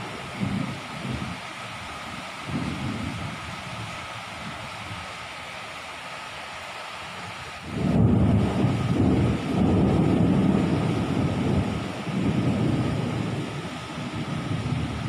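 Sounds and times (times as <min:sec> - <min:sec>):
thunder rumbling: 0:00.0 - 0:01.4, 0:02.4 - 0:03.8, 0:07.7 - 0:15.0.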